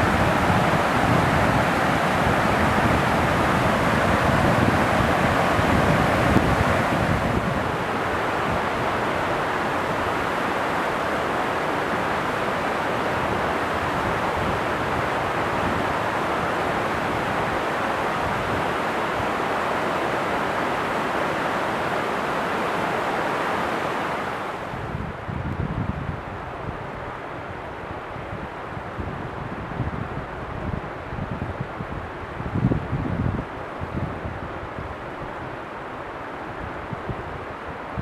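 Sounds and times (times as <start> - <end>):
fast-flowing water rushing: 0.0 - 24.9.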